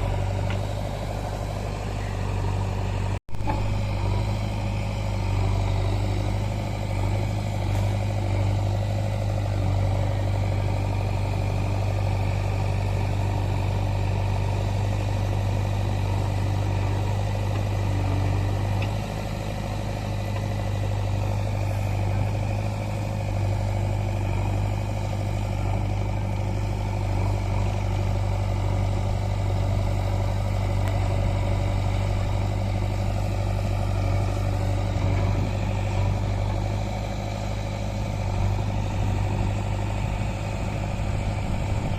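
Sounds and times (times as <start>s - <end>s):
diesel machinery engine running: 0.0s - 41.9s.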